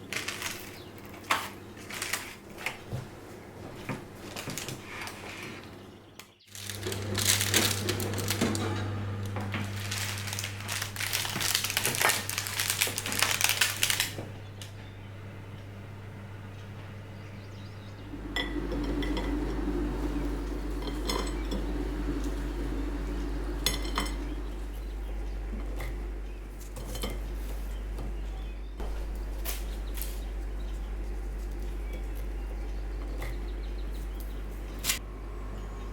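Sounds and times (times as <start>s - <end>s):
utensils and dishes clinking: 6.5s - 14.2s, 17.9s - 35.0s
steady low hum: 13.4s - 35.9s.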